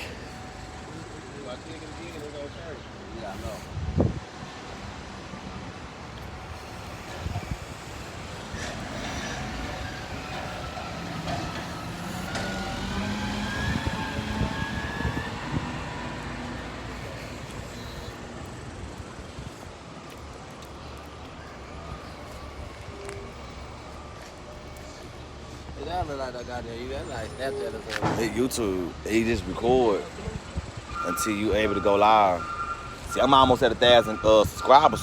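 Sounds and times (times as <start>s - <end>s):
passing vehicle engine hum: 3.4s - 30.2s.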